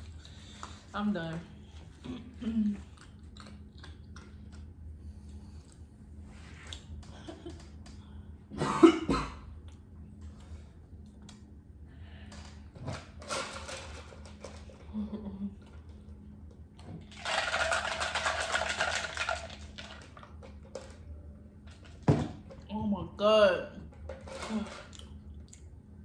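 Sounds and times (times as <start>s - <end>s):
person coughing: 8.5s - 9.5s.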